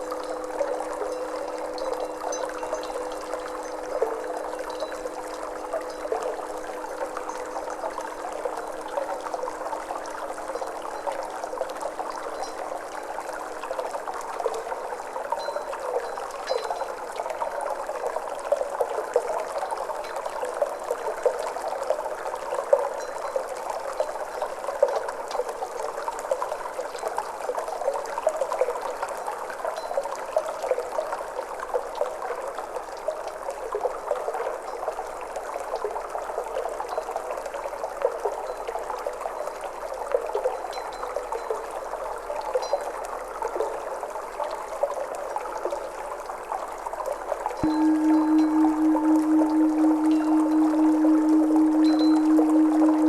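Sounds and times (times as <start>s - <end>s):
water trickling: 47.6s - 53.0s.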